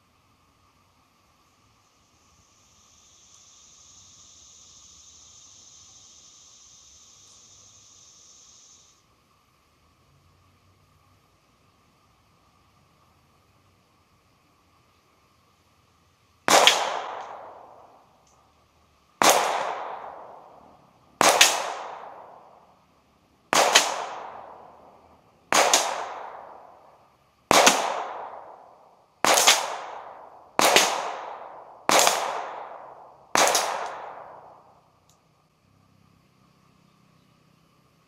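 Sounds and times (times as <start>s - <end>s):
distant pistol shots echoing: 16.5s - 17.7s, 19.2s - 20.5s, 21.2s - 22.4s, 23.5s - 24.7s, 25.5s - 26.6s, 27.5s - 28.6s, 29.2s - 34.6s.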